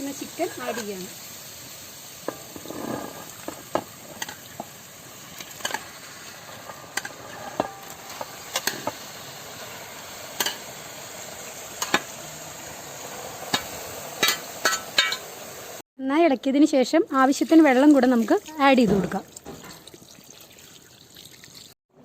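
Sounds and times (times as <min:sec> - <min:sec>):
chicken sizzling in a pan: 0:00.0 - 0:15.8.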